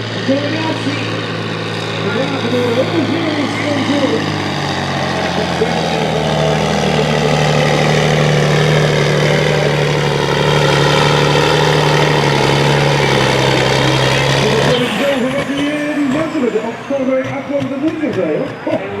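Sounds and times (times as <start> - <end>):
diesel engine revving high: 0.0 - 19.0.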